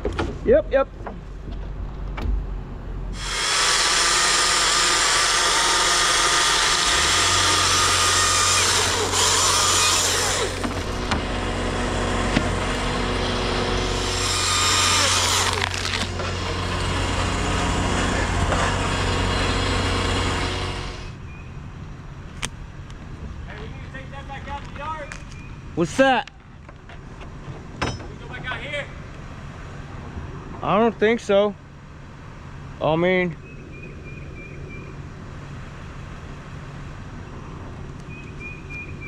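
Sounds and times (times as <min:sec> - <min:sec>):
chainsaw cutting wood: 0:03.2 - 0:21.2
low engine hum: 0:06.4 - 0:25.6.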